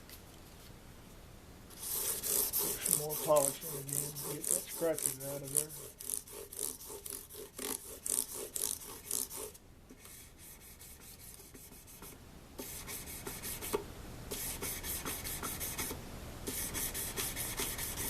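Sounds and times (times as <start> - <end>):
rubbing strokes polishing frets: 1.8 - 9.6.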